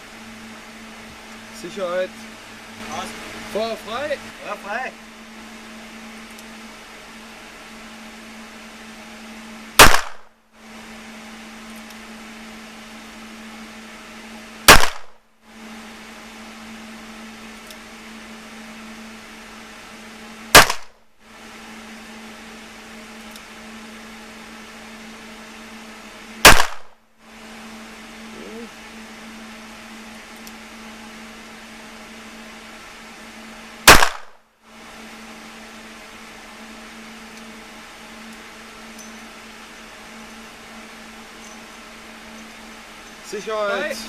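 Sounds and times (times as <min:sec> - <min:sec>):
steady low hum: 0:00.0 - 0:44.0
handgun shots: 0:09.8 - 0:10.3, 0:14.7 - 0:15.2, 0:20.6 - 0:20.9, 0:26.4 - 0:26.9, 0:33.9 - 0:34.4.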